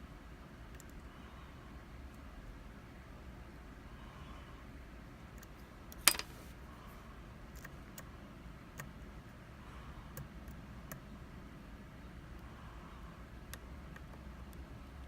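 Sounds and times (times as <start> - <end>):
faint irregular ticks: 0.7 - 1.2, 7.5 - 11.1, 12.3 - 15.0.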